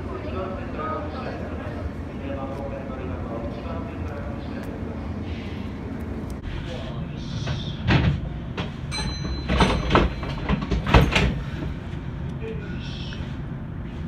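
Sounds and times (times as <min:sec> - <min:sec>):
train rumble: 0:00.0 - 0:14.0
wheels knocking over rail joints: 0:07.9 - 0:11.4.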